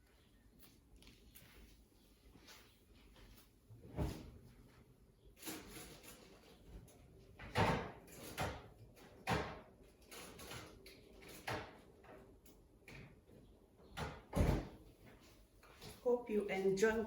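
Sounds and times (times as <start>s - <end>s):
kitchen items knocking and clunking: 7.4s - 11.9s.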